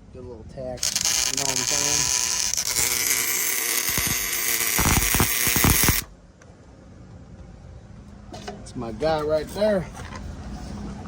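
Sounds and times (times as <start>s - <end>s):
welding arc buzzing: 0.8s - 6.1s.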